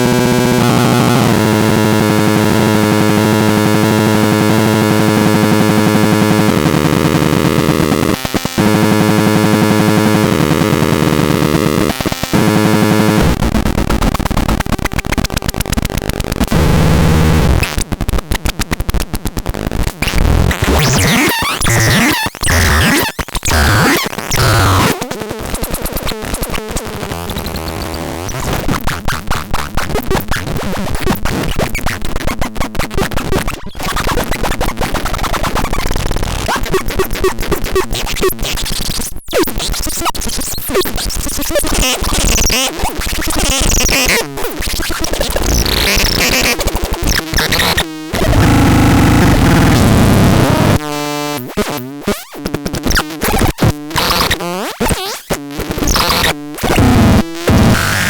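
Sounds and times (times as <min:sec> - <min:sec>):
glitching synthesizer noise: 0:08.6 - 0:31.9, 0:33.0 - 0:58.0
buzzing synthesizer drone: 0:20.7 - 0:24.9.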